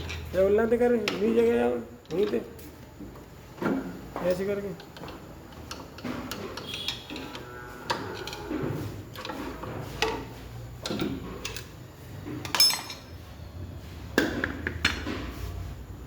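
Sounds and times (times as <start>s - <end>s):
metal tools clinking: 12.4s - 13.2s.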